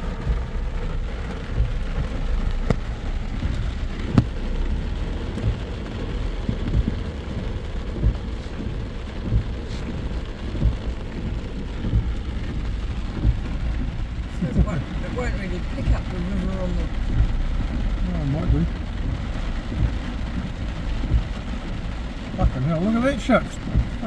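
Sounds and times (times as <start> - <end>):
car and road rumble: 0.0 - 24.0
heavy rain on a car: 0.0 - 24.0
sharp taps: 1.2 - 4.6, 5.2 - 13.9.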